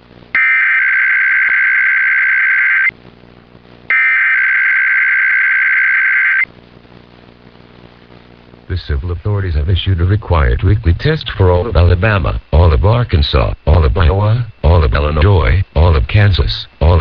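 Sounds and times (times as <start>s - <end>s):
buzzing electronic data screeches: 0.4s - 2.9s, 3.9s - 6.5s.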